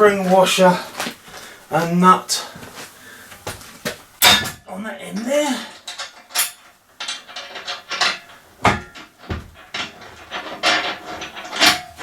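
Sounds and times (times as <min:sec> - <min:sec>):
sharp metallic knocks: 0:04.2 - 0:04.7, 0:06.4 - 0:12.0
metal nuts clinking and scraping: 0:05.7 - 0:12.0.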